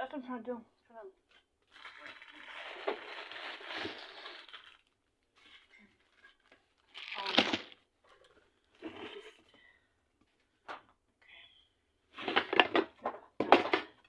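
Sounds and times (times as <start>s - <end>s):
crinkling rustling: 1.2s - 9.4s.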